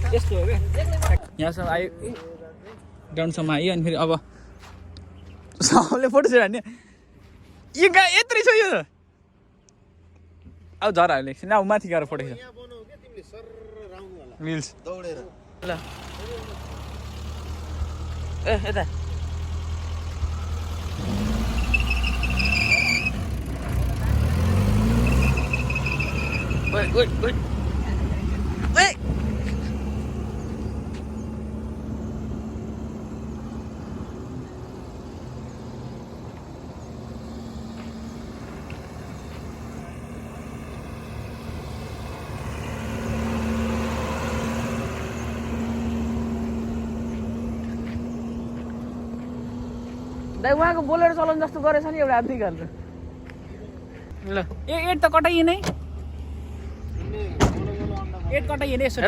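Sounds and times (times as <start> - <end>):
car engine revving: 15.6 - 57.7.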